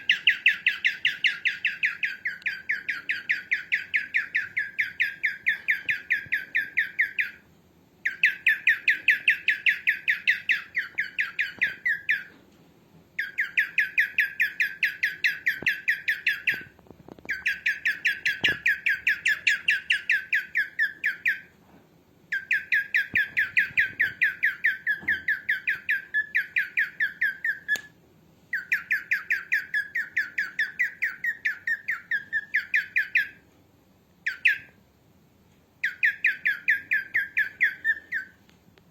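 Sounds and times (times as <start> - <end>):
cockatiel chirping: 0.0 - 12.5, 13.2 - 21.6, 22.3 - 33.5, 34.2 - 34.8, 35.8 - 38.6.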